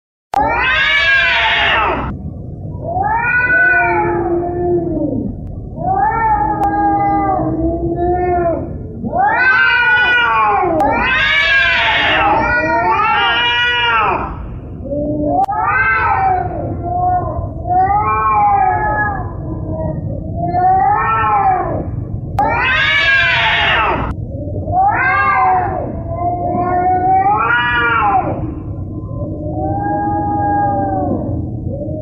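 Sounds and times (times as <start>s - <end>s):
cat yowling: 0.4s - 2.2s, 2.8s - 32.0s.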